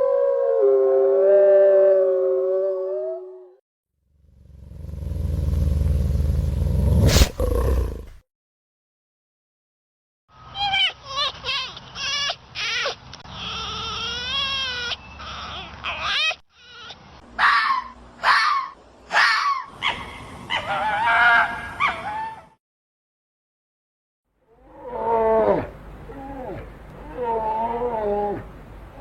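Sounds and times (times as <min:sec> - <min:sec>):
animal wavering call: 0:00.0 - 0:03.6.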